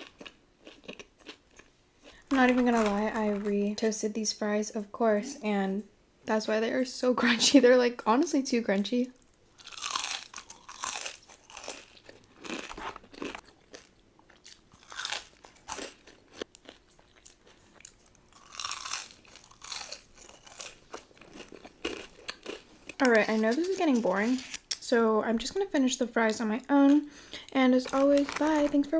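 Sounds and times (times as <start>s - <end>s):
chewing crunchy fries: 0.0s - 3.4s, 9.2s - 24.9s, 26.9s - 28.9s.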